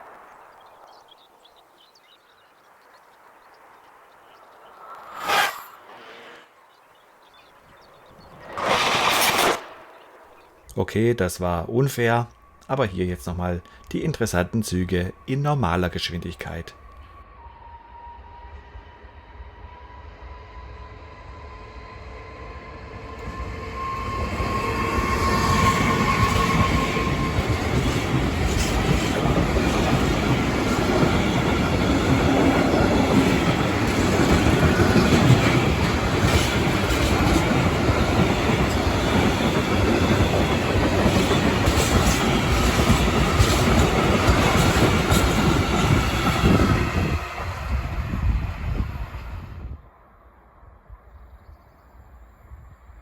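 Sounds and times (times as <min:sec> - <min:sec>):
thin whine: 0:04.6 - 0:06.6
train wheels rushing on rail: 0:20.3 - 0:49.6.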